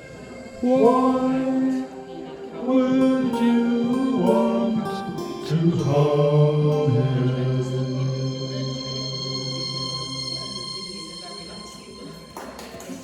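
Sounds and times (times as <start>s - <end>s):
voices singing slow song: 0.0s - 13.0s.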